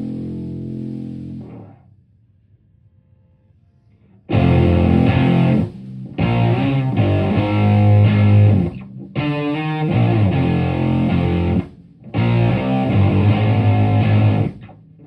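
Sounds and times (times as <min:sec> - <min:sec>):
amp hum: 0:00.0 - 0:01.8, 0:04.2 - 0:15.0
fuzzed electric guitar notes: 0:04.3 - 0:14.7.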